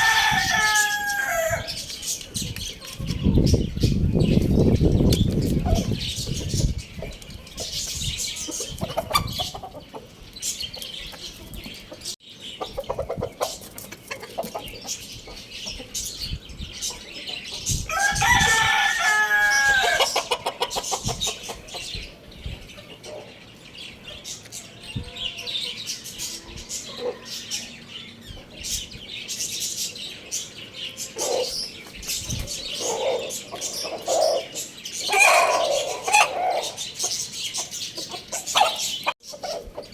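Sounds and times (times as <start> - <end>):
rooster crowing: 0.0 - 1.7, 17.9 - 20.1
birds chirping: 0.0 - 39.9.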